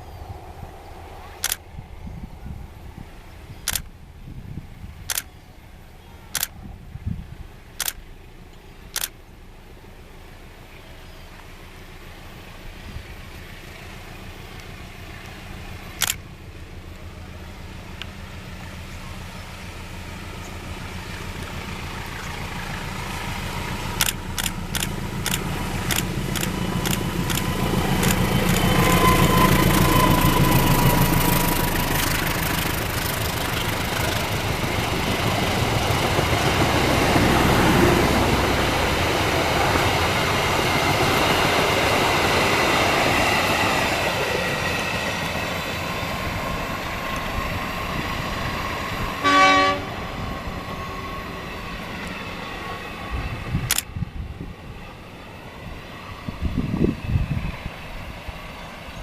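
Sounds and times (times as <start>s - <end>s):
train rumble approaching: 0.0s - 59.0s
sharp clicks: 1.4s - 1.6s, 3.6s - 3.9s, 5.0s - 5.3s, 6.3s - 6.6s, 7.8s - 8.0s, 8.9s - 9.2s, 16.0s - 16.2s, 24.0s - 28.7s, 53.7s - 53.9s.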